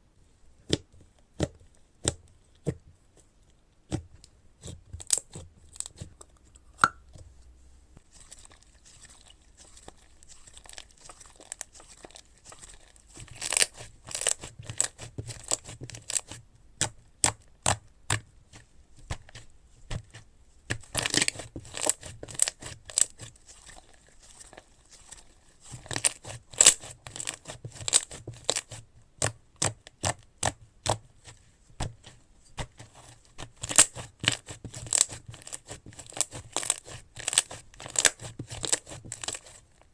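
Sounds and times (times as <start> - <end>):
slime crackling and popping: 8.3 - 18.2, 20.7 - 31.0, 33.4 - 39.6.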